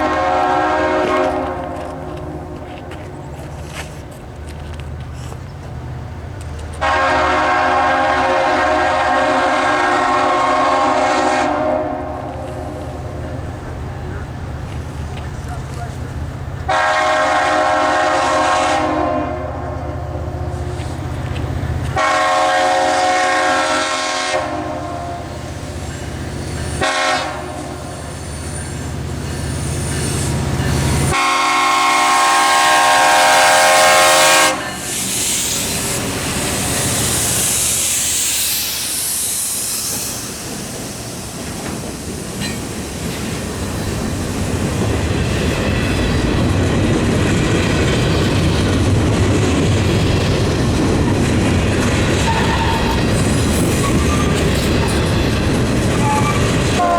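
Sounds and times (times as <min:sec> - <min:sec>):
train horn: 0:00.0 - 0:03.0, 0:06.8 - 0:13.2, 0:16.7 - 0:20.2, 0:21.9 - 0:25.4, 0:26.8 - 0:28.1, 0:31.0 - 0:34.9, 0:52.2 - 0:53.0, 0:56.0 - 0:56.9
train wheels clattering on rails: 0:00.0 - 0:07.1, 0:12.1 - 0:17.0, 0:33.0 - 0:56.9.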